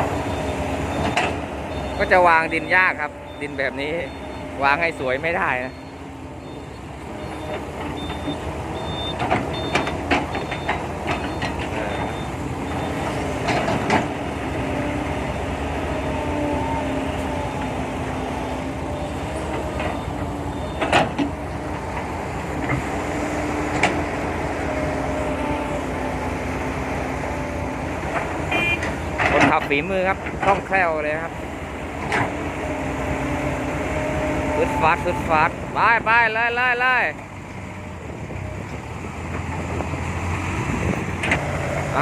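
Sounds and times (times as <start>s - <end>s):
excavator diesel engine: 0.0s - 42.0s
reversing alarm beeping: 0.2s - 13.0s, 19.0s - 21.0s, 34.6s - 35.5s
excavator bucket clanking: 7.4s - 14.2s, 19.2s - 22.9s, 28.0s - 30.7s.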